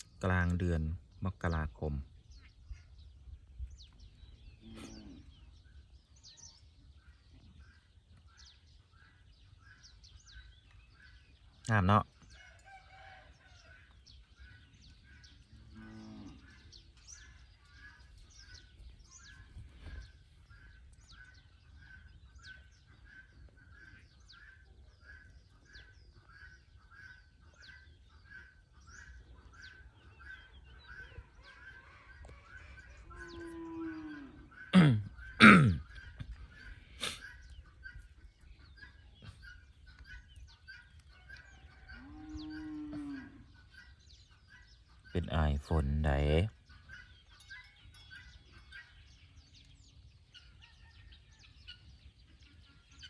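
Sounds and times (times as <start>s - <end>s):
cattle mooing: 15.6s - 16.6s, 33.2s - 35.7s, 41.9s - 43.6s.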